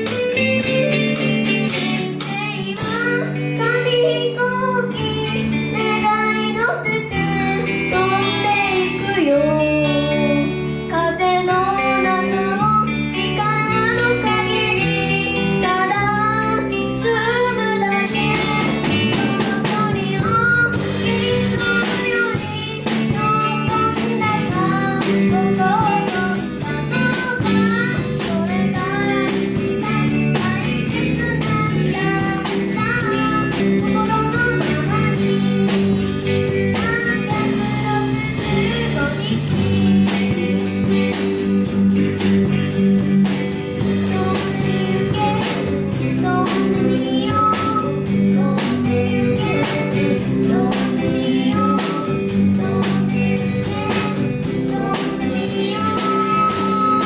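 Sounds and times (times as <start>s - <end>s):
drums and cymbals: 0.0s - 3.2s, 18.1s - 57.0s
guitar: 0.0s - 57.0s
child singing: 1.2s - 42.6s, 43.2s - 57.0s.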